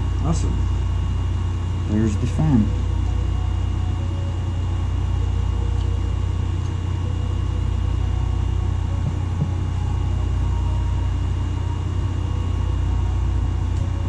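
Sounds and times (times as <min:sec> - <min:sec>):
high-pitched whine: 0:00.0 - 0:14.0
low hum: 0:00.0 - 0:14.0.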